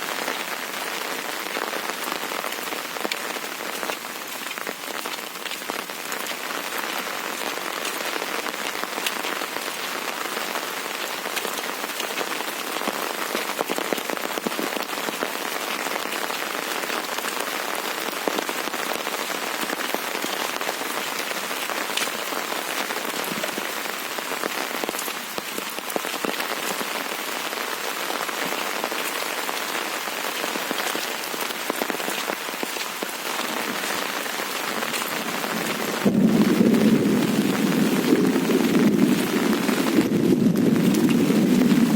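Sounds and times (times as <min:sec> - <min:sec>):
heavy rain hiss: 0:13.8 - 0:41.9
sharp rain drop taps: 0:34.8 - 0:41.9.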